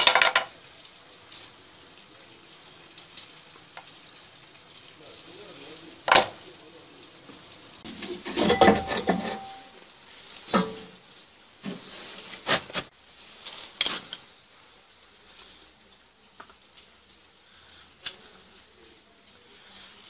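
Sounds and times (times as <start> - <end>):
metal tools clinking and clattering: 8.2 - 9.8.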